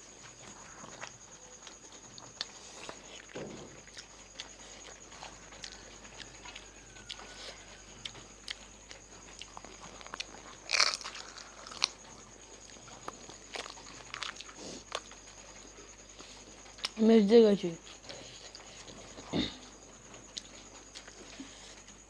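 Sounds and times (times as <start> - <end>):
crisp crunching and chewing: 0.7 - 15.4.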